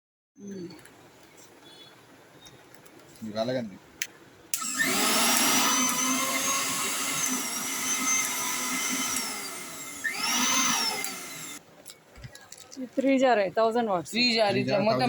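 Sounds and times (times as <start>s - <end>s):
mixer grinder motor whining: 4.6s - 11.6s.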